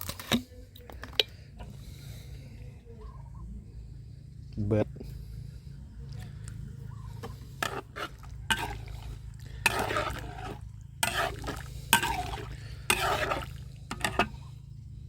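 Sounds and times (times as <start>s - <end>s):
steady low hum: 0.0s - 15.0s
ladle scraping in pot: 7.2s - 14.5s.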